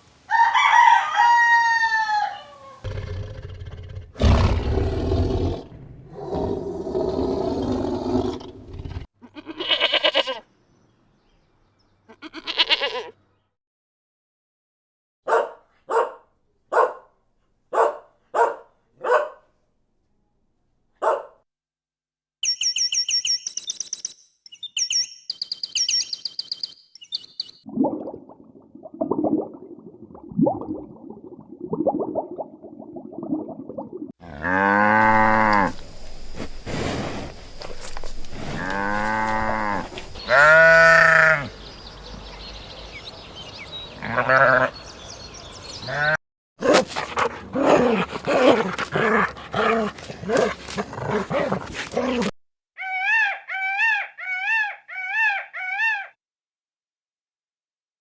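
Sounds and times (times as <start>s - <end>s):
sheep bleating: 9.2s - 10.4s, 12.1s - 13.2s, 38.6s - 41.5s, 44.0s - 44.7s.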